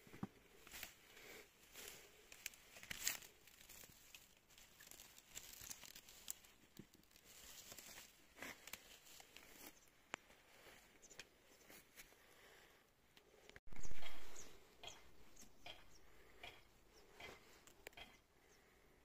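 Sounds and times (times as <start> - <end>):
small clicks and crackles: 1.7 - 10.2.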